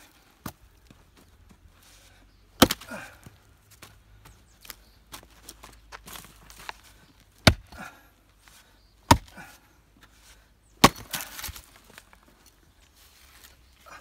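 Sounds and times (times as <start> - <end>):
axe chopping firewood: 2.6 - 3.2, 7.4 - 8.1, 9.0 - 9.7, 10.8 - 12.0.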